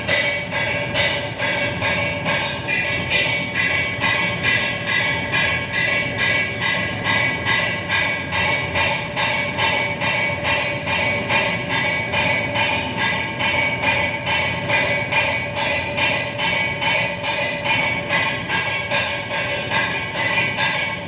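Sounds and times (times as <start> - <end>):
rapid metallic banging: 0.0 - 21.0.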